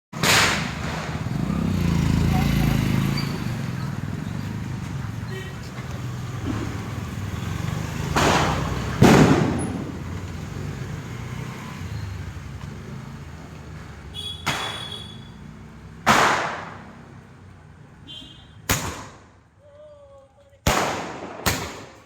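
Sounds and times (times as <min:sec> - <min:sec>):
firework bangs: 0:00.2 - 0:01.8, 0:08.0 - 0:10.3, 0:14.4 - 0:15.2, 0:16.0 - 0:17.0, 0:18.7 - 0:19.4, 0:20.7 - 0:22.0.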